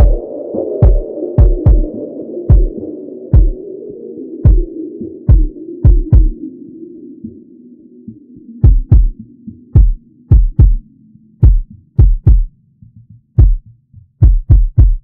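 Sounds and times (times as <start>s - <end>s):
deep kick drum hits: 0.0s - 0.2s, 0.8s - 1.9s, 2.5s - 2.7s, 3.4s - 3.6s, 4.5s - 4.7s, 5.3s - 6.3s, 8.6s - 9.2s, 9.8s - 10.8s, 11.4s - 12.5s, 13.4s - 13.6s, 14.2s - 15.0s.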